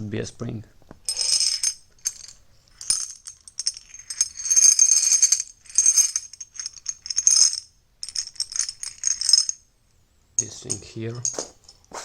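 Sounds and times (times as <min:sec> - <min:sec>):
small metal parts rattling: 0:01.1 - 0:09.6.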